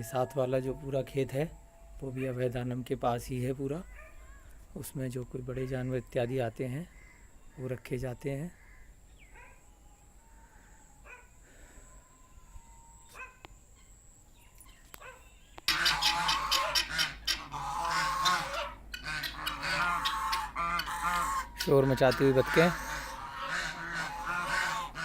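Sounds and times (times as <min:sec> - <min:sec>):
faint bird calls: 0:08.5 - 0:25.0
ducks quacking: 0:15.7 - 0:25.0.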